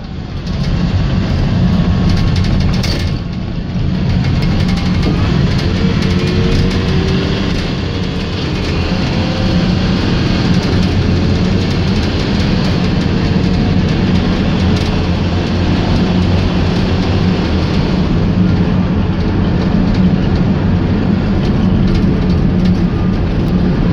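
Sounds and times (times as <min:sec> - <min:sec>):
body rattles and clicks: 0:00.0 - 0:23.9
engine and road drone: 0:00.0 - 0:23.9.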